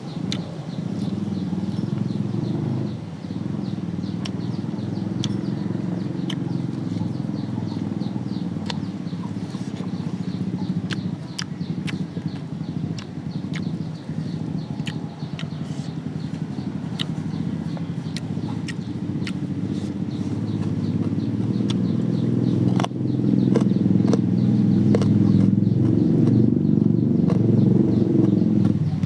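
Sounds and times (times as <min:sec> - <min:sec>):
steady low rumble: 0:00.0 - 0:29.0
sharp mouth clicks: 0:00.2 - 0:00.6, 0:04.0 - 0:26.5
chewing: 0:05.2 - 0:05.5, 0:06.2 - 0:07.9, 0:08.6 - 0:22.0, 0:22.6 - 0:26.5.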